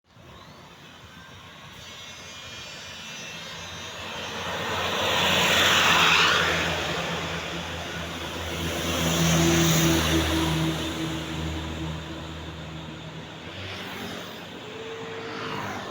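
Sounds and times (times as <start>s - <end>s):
buses driving past: 0.1s - 15.9s.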